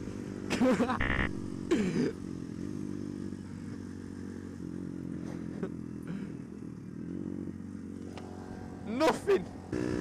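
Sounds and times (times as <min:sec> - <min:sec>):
motorcycle engine running: 0:00.0 - 0:10.0.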